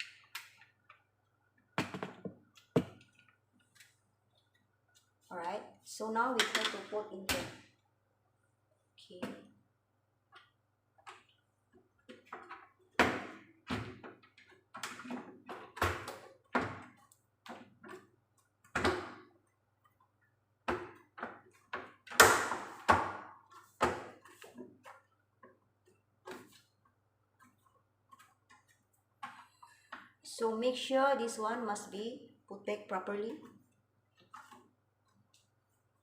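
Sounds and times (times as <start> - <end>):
plastic parts clicking and knocking: 10.3 - 30.2.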